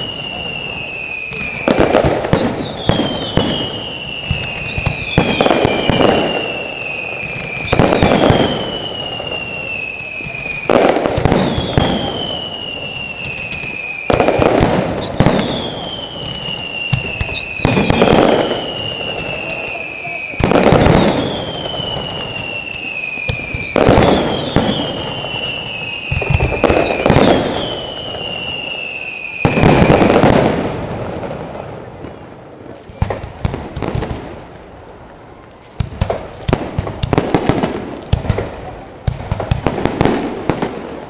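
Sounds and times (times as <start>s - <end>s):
firework falling whistle: 0.0s - 30.7s
firework bursts: 0.0s - 41.0s.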